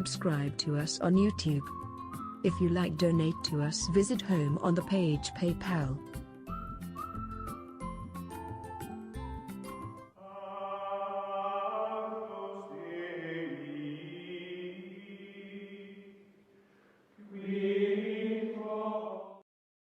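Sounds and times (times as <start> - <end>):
chant-like voices singing: 10.2 - 16.2, 17.2 - 19.4.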